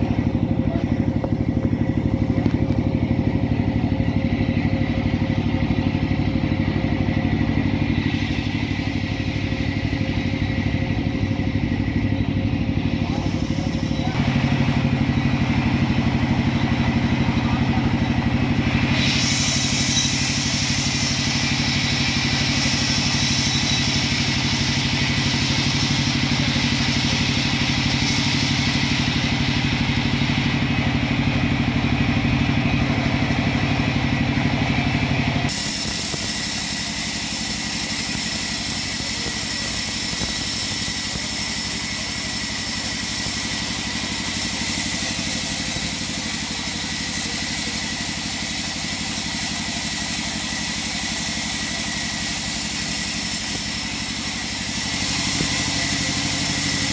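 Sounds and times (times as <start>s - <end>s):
sawmill machine humming: 0.0s - 56.9s
high hiss: 17.7s - 30.6s, 35.5s - 56.9s.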